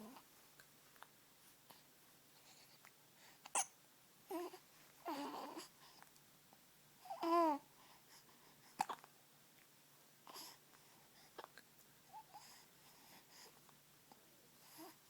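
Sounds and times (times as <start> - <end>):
baby hiccuping: 3.5 - 3.8
baby cooing and babbling: 4.3 - 5.7, 7.0 - 7.7.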